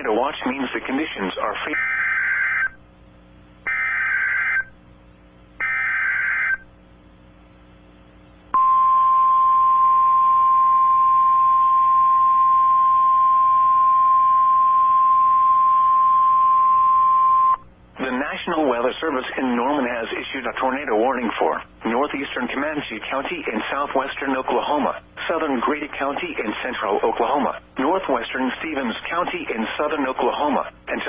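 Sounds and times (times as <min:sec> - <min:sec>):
steady alarm tone: 0:01.7 - 0:02.8, 0:03.6 - 0:04.7, 0:05.6 - 0:06.7, 0:08.5 - 0:17.6
screeching data bursts: 0:03.7 - 0:04.7.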